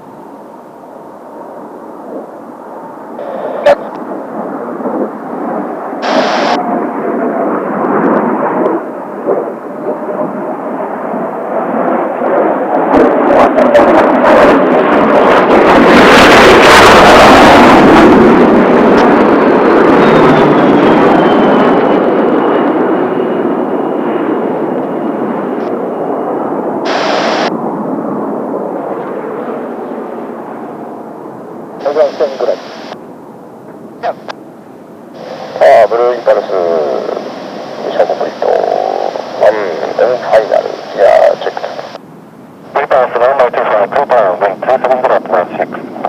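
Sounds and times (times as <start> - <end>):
jet aircraft flying past: 1.1 - 42.0, 42.6 - 46.0
burst of hiss: 6.0 - 6.6, 26.9 - 27.5.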